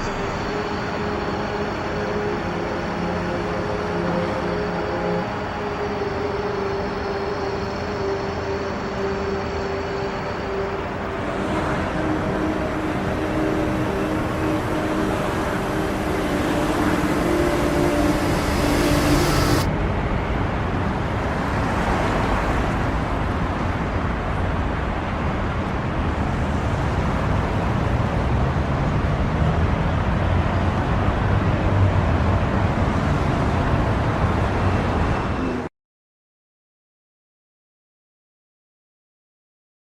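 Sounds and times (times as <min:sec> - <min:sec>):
faint steady tones: 0:00.0 - 0:25.6
vehicle and road noise: 0:00.0 - 0:35.7.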